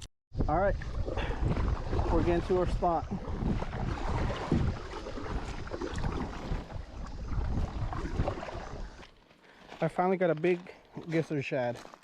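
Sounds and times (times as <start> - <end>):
wind buffeting microphone: 0.3 - 9.1
kayak paddling water: 0.4 - 9.8.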